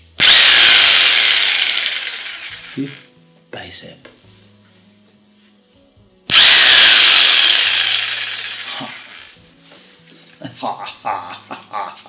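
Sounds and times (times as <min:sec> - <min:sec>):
jigsaw running free: 0:00.2 - 0:03.0, 0:06.3 - 0:09.3.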